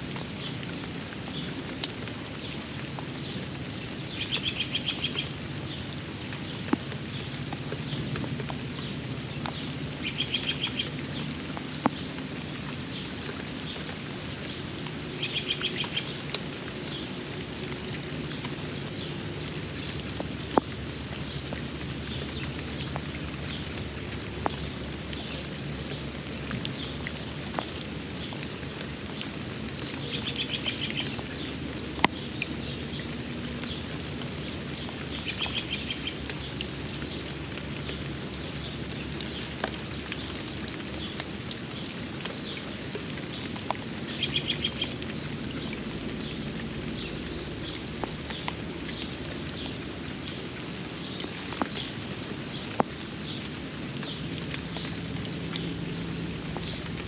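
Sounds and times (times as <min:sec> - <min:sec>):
sharp drip ticks: 0:00.0 - 0:57.0
steady rain: 0:00.0 - 0:57.0
songbird trilling: 0:10.0 - 0:10.9.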